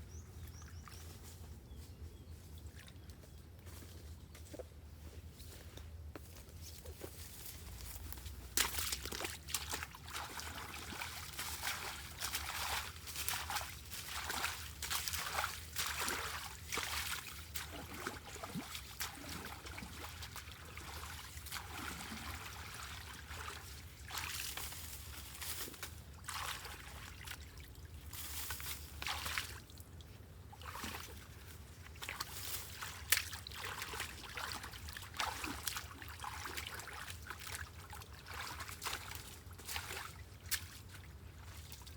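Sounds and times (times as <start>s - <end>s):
water trickling and sloshing: 0.1s - 3.4s, 6.8s - 41.9s
water splashes: 8.6s - 41.9s.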